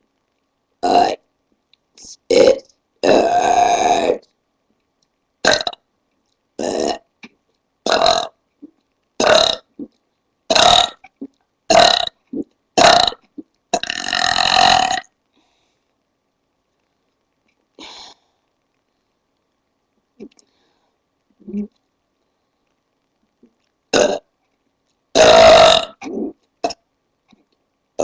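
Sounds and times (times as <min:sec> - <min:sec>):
woman burping: 0:25.2 - 0:26.8.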